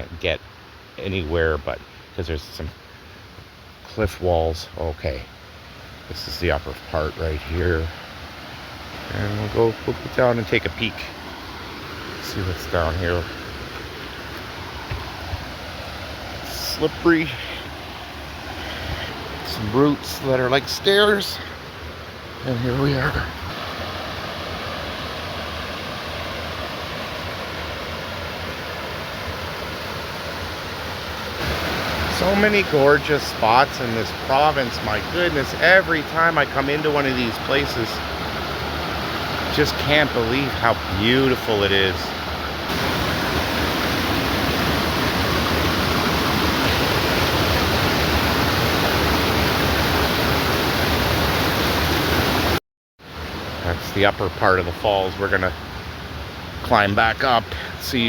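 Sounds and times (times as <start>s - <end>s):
waterfall rushing: 8.0s - 52.6s.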